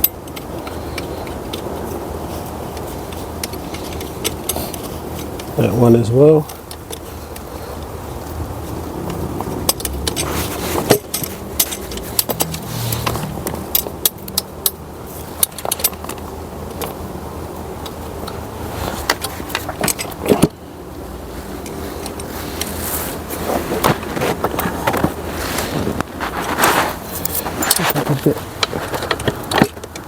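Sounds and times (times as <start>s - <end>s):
metallic clicks of bolts and tools: 9.6s - 14.8s.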